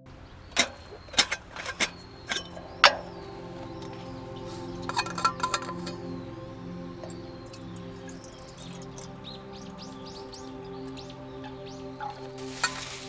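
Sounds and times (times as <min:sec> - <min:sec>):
faint background music: 0:00.0 - 0:13.0
sharp knocks and clinks: 0:00.2 - 0:06.3.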